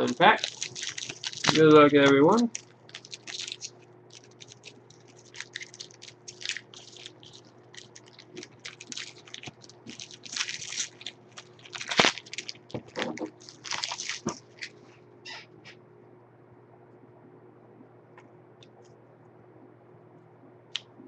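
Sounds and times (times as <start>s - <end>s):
wrapper crinkling and tearing: 0.0s - 14.8s.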